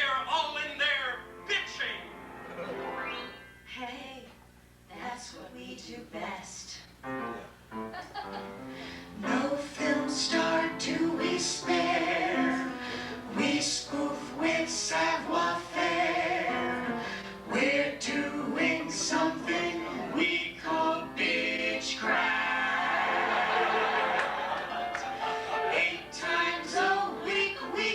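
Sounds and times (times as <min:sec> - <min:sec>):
piano accompaniment: 0:01.0 - 0:03.6, 0:07.0 - 0:27.9
person singing a show tune: 0:25.6 - 0:27.9.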